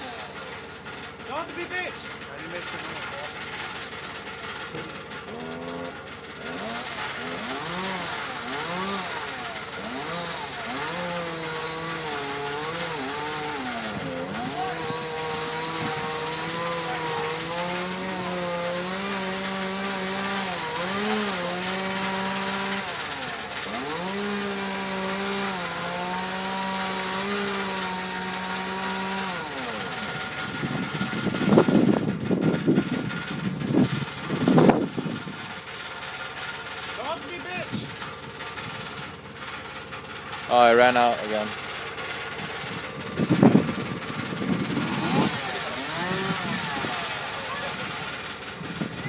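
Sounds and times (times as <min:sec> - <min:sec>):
chainsaw cutting a tree trunk: 0:00.0 - 0:01.9, 0:03.0 - 0:49.0
loud burst of noise: 0:43.5 - 0:49.0.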